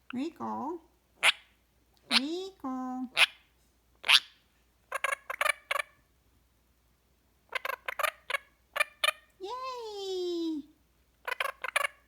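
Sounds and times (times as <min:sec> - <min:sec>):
parrot squawk: 0:01.2 - 0:01.5, 0:02.1 - 0:02.3, 0:03.1 - 0:03.4, 0:04.0 - 0:06.0, 0:07.5 - 0:09.2
parrot chattering calls: 0:01.2 - 0:02.3, 0:03.1 - 0:06.0, 0:07.5 - 0:09.2, 0:11.2 - 0:12.0.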